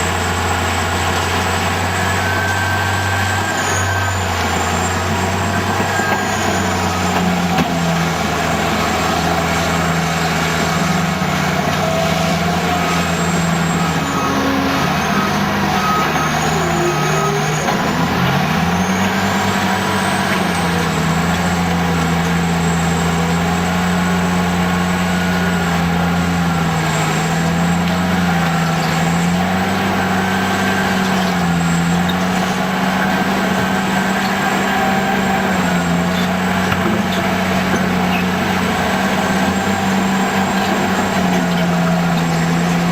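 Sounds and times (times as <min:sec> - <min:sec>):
bulldozer diesel engine under load: 0:00.0 - 0:42.9.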